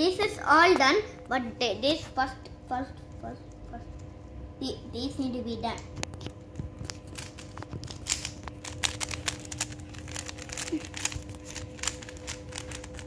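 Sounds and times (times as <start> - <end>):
puzzle cube plastic clicks: 6.9 - 13.0.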